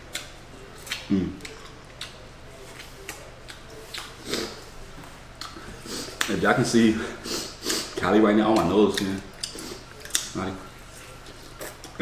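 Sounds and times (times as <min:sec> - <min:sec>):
lip smacks: 0:00.1 - 0:04.6.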